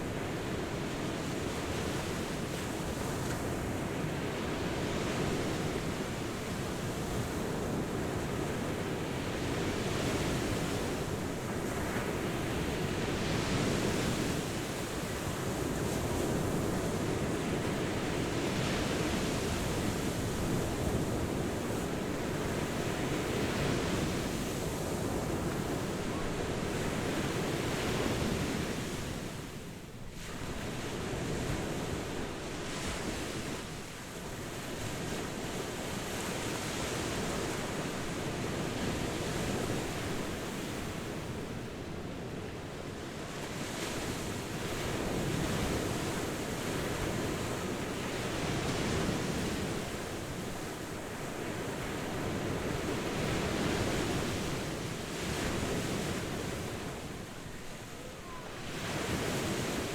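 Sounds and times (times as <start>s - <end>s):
ocean surf washing onto beach: 0.0s - 59.9s.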